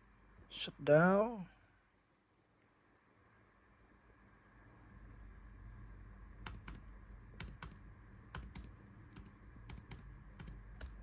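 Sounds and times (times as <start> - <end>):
laptop keys clicking: 6.4 - 6.8, 7.4 - 11.0.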